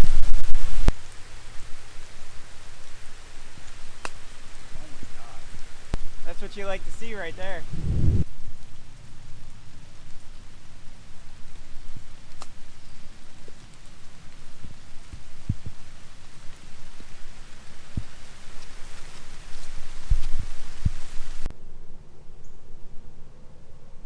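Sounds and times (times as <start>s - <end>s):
steady rain hiss: 0.0s - 21.5s
low thumps: 7.6s - 8.8s.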